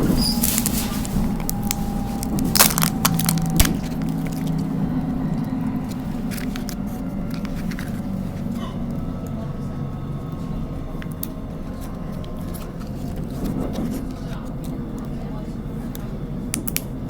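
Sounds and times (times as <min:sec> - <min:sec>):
plastic wrapper crinkling: 0:00.0 - 0:08.5
train rumble: 0:00.0 - 0:17.0.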